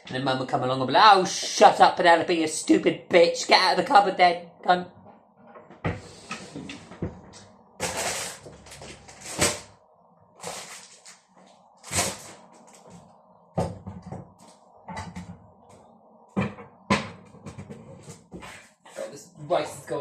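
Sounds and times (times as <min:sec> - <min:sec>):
rustling: 0:10.4 - 0:13.1.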